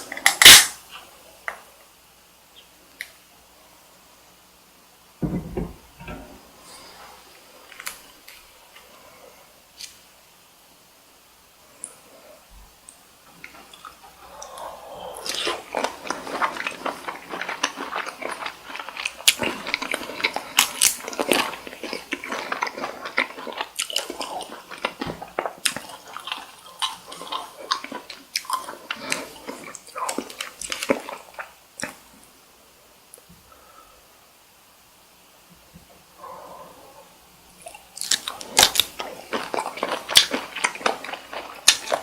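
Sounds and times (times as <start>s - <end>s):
wet chewing: 13.4s - 32.0s, 37.6s - 42.0s.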